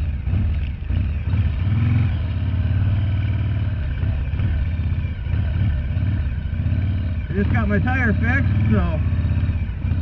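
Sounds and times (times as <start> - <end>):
motorcycle engine running: 0.0 - 10.0.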